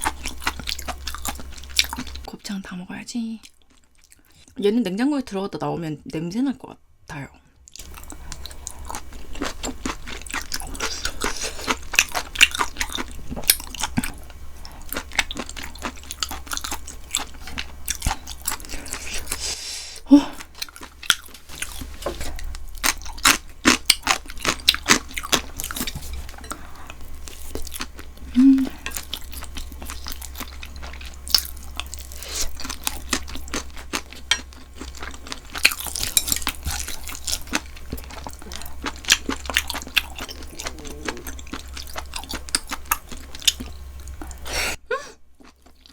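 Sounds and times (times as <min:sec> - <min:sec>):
close chewing and biting: 0:00.0 - 0:02.3, 0:07.7 - 0:19.5, 0:20.3 - 0:44.5, 0:45.4 - 0:45.9.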